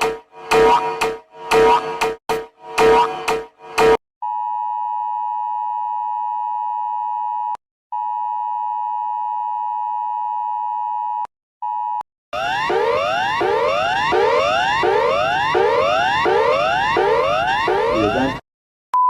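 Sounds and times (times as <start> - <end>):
two-tone alert signal: 12.4 - 18.4.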